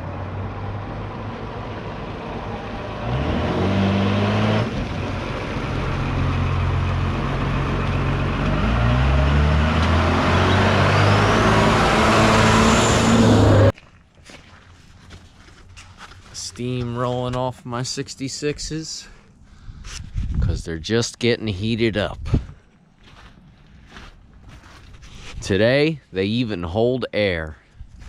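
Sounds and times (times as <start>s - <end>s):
monster truck engine revving: 2.3s - 13.7s.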